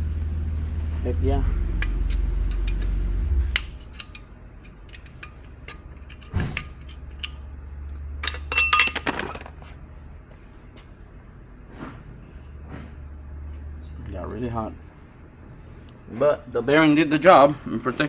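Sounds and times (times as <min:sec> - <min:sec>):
low hum: 0:00.0 - 0:16.2
metal parts clinking: 0:03.6 - 0:07.5, 0:08.2 - 0:09.6.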